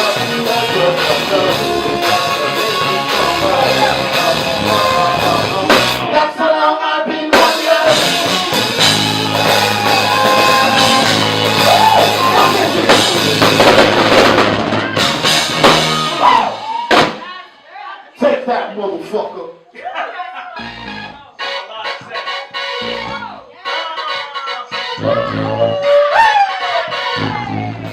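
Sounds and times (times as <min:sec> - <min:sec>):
live rock band playing: 0:00.0 - 0:06.2, 0:07.3 - 0:17.2.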